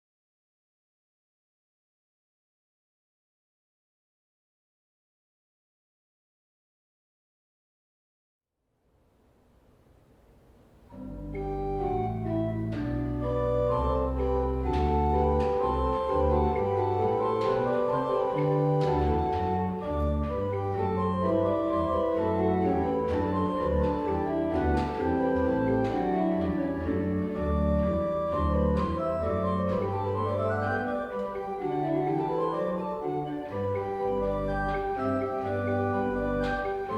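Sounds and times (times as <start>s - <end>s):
organ playing sustained chords: 10.9s - 36.9s.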